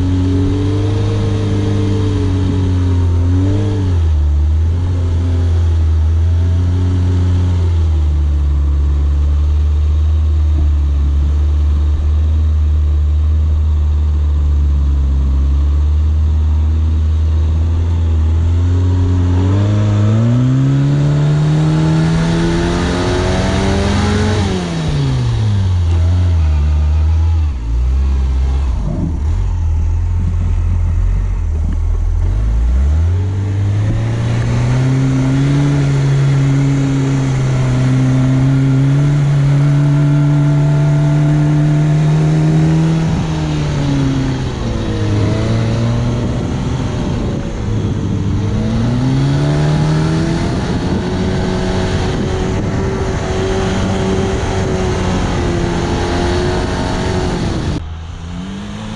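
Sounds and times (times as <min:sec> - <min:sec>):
petrol engine revving under load: 0:17.7 - 0:58.9.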